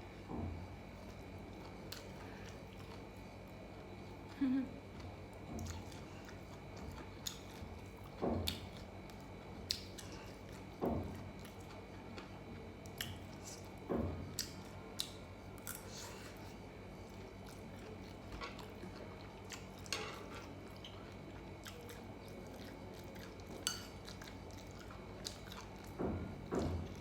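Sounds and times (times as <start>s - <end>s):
low steady hum: 0.0s - 27.0s
person chewing food: 0.9s - 4.4s, 5.0s - 27.0s.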